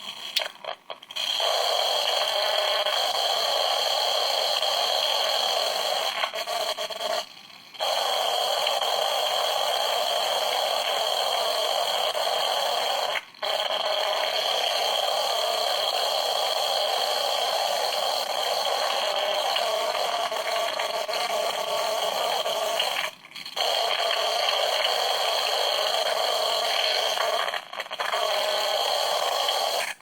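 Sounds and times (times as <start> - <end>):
buzzing static interference: 17.5 - 30.0.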